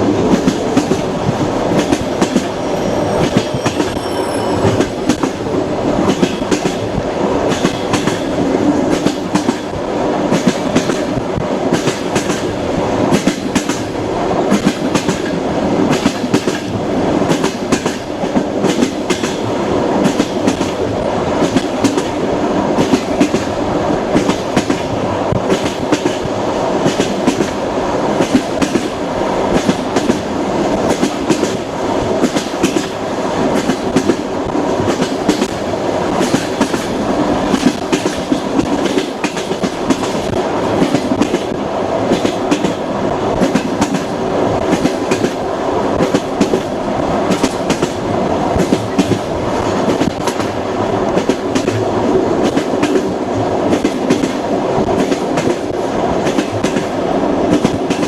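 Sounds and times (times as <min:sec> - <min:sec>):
train wheels rumbling on rails: 0:00.0 - 0:58.0.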